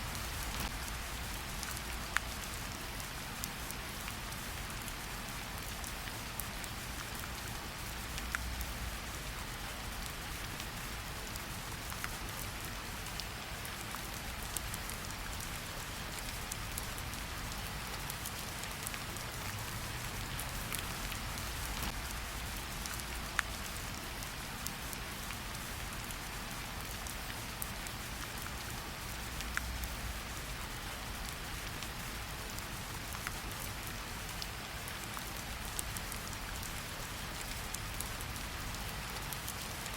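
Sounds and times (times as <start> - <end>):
steady rain falling: 0.0 - 39.9
wood fire crackling: 17.4 - 24.0.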